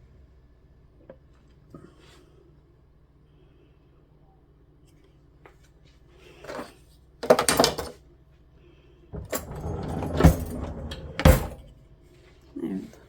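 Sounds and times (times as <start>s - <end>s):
kitchen items clattering: 6.5s - 8.0s, 9.2s - 11.8s.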